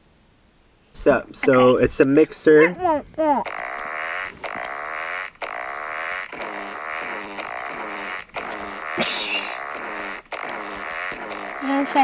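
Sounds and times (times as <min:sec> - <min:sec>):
fart sound effects: 0:02.9 - 0:12.0.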